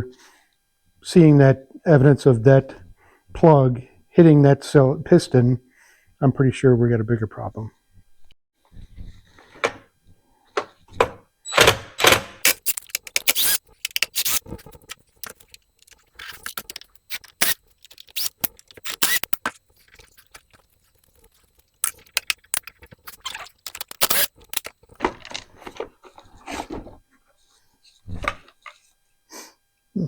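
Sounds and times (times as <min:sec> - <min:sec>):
plastic parts clicking and clattering: 0:12.1 - 0:25.9.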